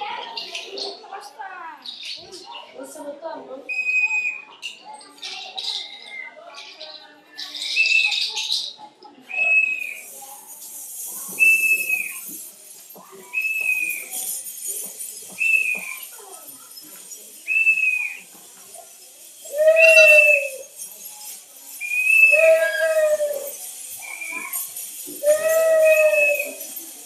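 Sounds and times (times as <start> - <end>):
steady hiss: 9.8 - 27.0
high whistled note: 11.4 - 12.4, 19.4 - 26.8.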